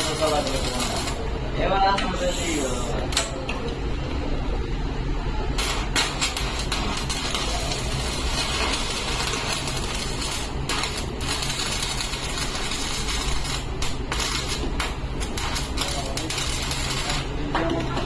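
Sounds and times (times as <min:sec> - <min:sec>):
welding arc crackling: 0:00.0 - 0:01.5, 0:05.5 - 0:18.0
welding machine hum: 0:00.0 - 0:01.8, 0:05.2 - 0:18.0.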